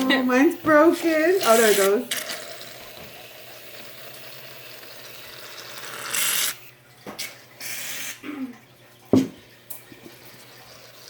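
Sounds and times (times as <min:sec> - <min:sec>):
aerosol can hissing: 0:01.2 - 0:02.5, 0:05.4 - 0:06.6, 0:07.6 - 0:08.2.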